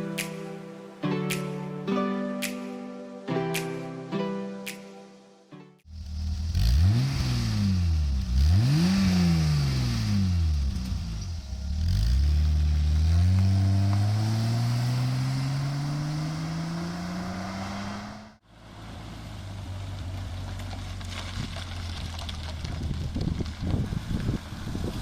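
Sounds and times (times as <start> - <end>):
car engine revving: 5.9 - 21.2.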